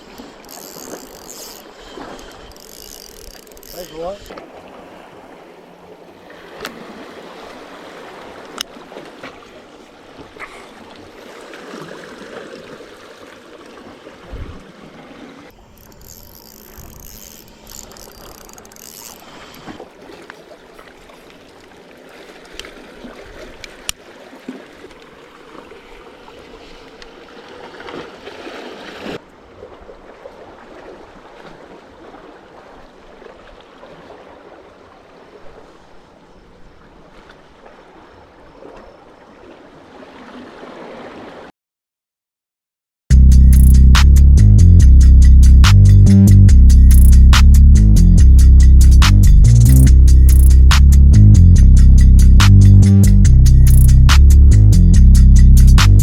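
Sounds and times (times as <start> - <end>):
sea water sloshing and lapping: 0.0 - 41.5.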